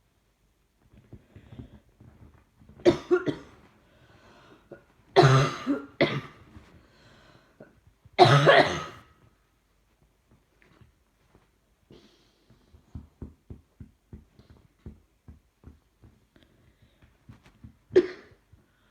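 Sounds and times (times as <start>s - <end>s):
person coughing: 2.9s - 3.5s, 5.2s - 6.4s, 8.2s - 9.1s, 17.9s - 18.4s.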